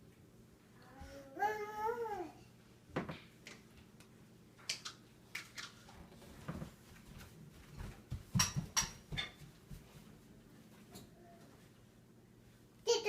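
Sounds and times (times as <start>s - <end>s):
dishes and cutlery clinking: 8.3s - 9.5s.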